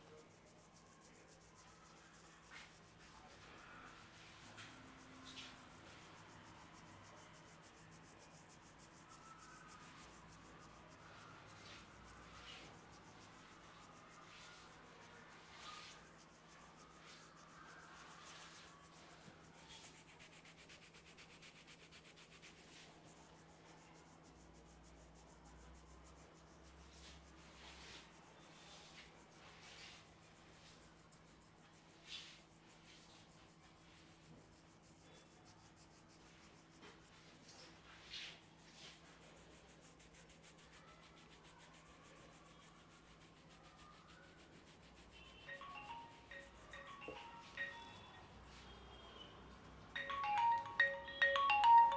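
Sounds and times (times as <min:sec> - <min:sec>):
hands rubbing hair and scalp: 0:00.0 - 0:48.7
soft marimba-like melody: 0:50.0 - 0:51.9.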